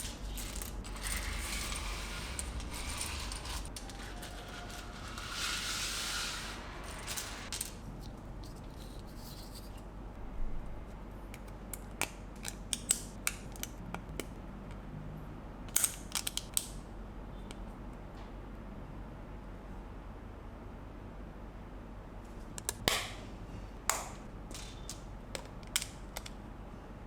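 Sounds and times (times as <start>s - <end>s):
plastic bricks rustling: 0.0s - 5.9s.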